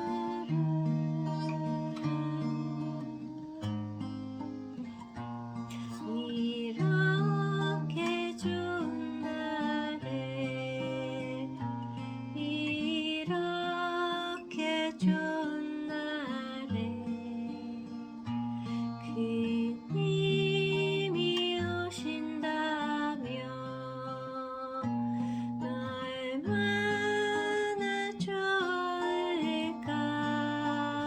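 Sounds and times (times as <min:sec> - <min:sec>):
person singing ballad with vibrato: 0:00.0 - 0:03.8.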